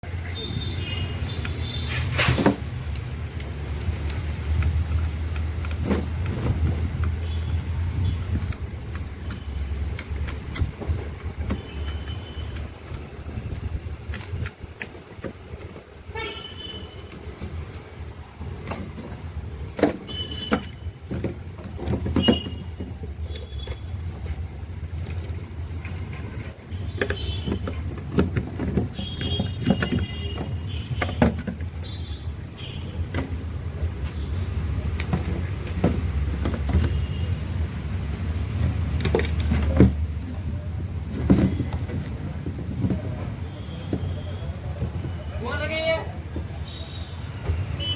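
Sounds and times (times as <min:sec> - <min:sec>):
knocks and clicks: 0:17.0 - 0:45.1.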